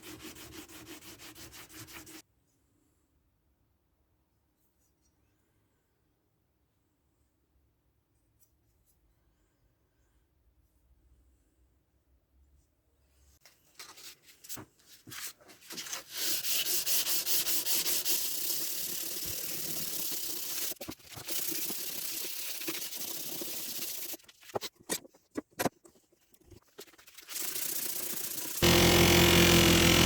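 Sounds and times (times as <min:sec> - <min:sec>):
hand sanding strokes: 0:00.0 - 0:02.2, 0:16.1 - 0:24.2.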